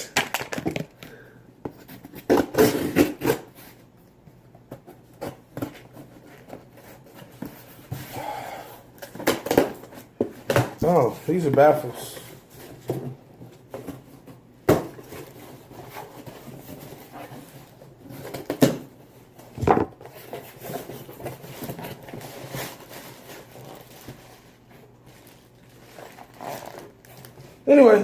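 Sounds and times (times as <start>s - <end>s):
packaging rustling and shuffling: 8.8s - 28.0s.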